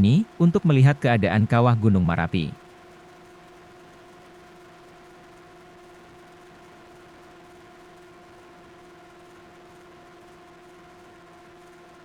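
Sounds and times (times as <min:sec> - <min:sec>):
faint steady hum: 0:00.0 - 0:02.7.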